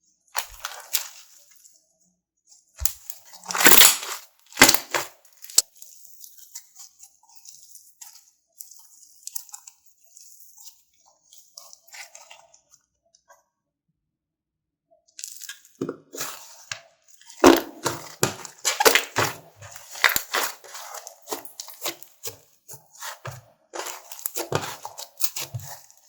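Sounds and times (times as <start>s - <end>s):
sticky pops and crackles of slime: 2.8s - 5.6s, 17.4s - 22.0s.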